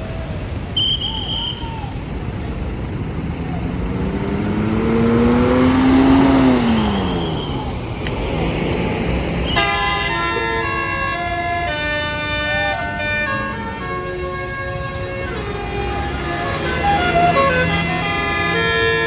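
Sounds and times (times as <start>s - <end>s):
bus passing: 0.0s - 19.0s
multi-note bus horn: 9.4s - 19.0s.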